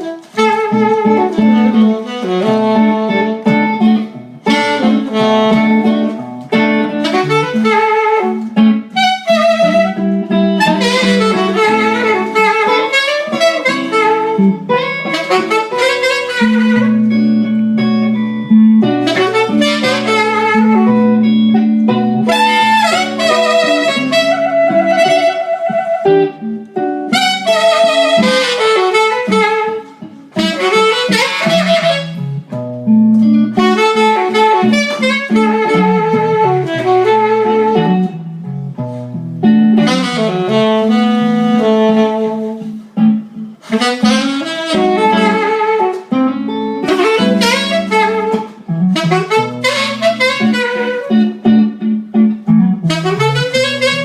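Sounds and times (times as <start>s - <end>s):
guitar and band accompaniment: 0.0s - 54.0s
saxophone melody: 0.0s - 54.0s.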